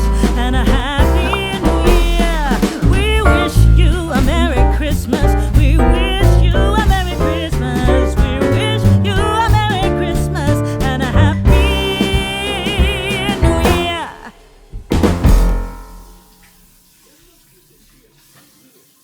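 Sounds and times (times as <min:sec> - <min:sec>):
pop song with vocals: 0:00.0 - 0:14.8.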